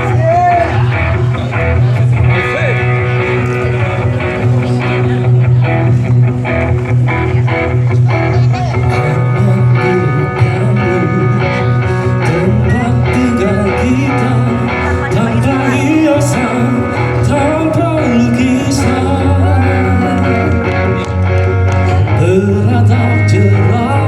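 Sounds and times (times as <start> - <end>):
guitar song music with bass: 0.0 - 24.0.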